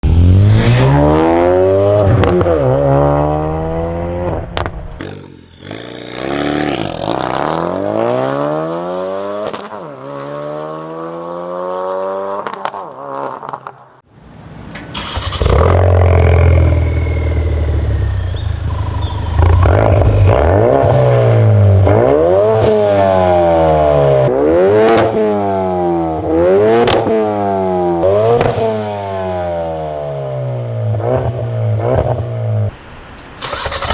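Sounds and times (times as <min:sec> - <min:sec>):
car engine revving: 0:00.0 - 0:05.1, 0:14.9 - 0:32.7.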